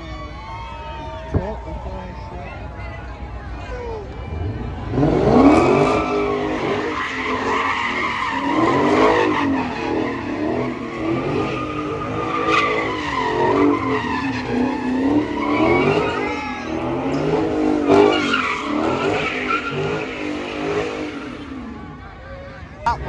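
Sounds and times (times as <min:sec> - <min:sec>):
car engine revving: 0:04.1 - 0:22.0.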